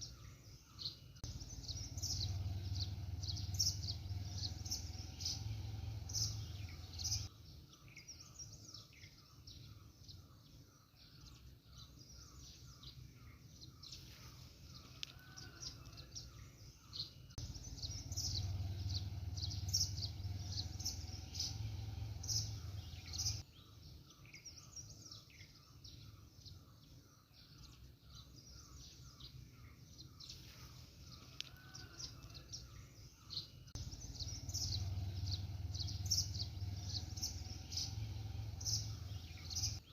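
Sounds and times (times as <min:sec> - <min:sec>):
birds chirping: 0:00.0 - 0:39.9
repeated lower bird notes: 0:33.4 - 0:39.9.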